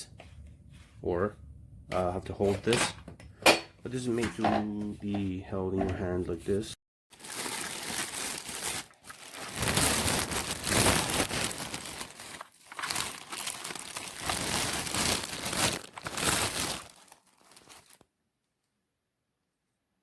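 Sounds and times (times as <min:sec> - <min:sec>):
crinkling rustling handling noise: 0:03.9 - 0:18.1.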